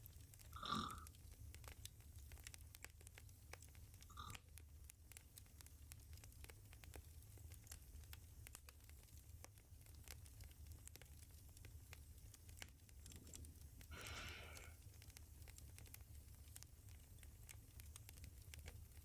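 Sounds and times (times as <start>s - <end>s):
faint clicks: 0.0s - 19.0s
soft breath: 13.9s - 14.8s.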